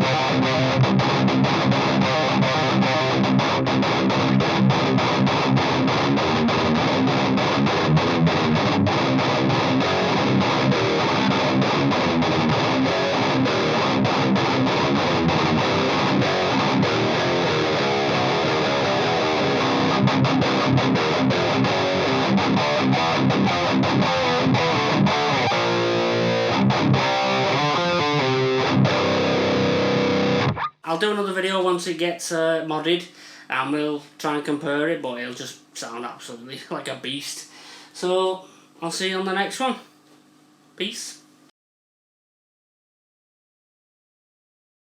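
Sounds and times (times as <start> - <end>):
distorted electric guitar riffing: 0.0 - 30.8.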